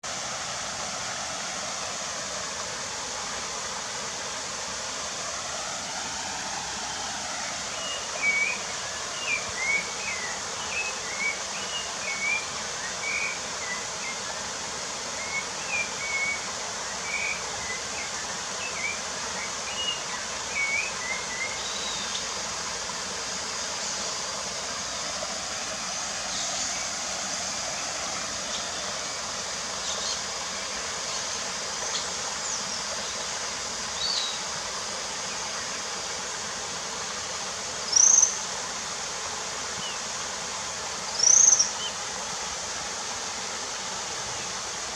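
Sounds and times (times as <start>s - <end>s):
steady rushing hiss: 0.0s - 44.9s
songbird singing clear notes: 17.1s - 34.5s, 37.9s - 38.4s.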